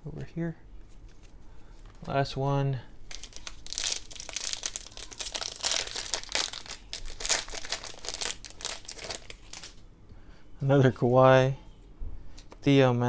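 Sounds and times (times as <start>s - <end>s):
plastic wrapper crinkling: 3.1s - 9.8s.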